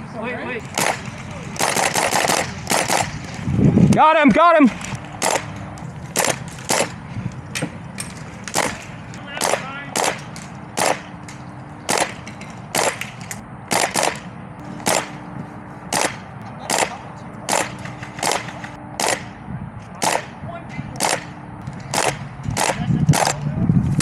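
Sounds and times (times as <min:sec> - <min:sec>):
airsoft gun shots: 0:00.6 - 0:03.4, 0:04.8 - 0:07.0, 0:08.4 - 0:11.1, 0:11.9 - 0:15.2, 0:15.9 - 0:19.4, 0:20.0 - 0:20.4, 0:21.0 - 0:23.4.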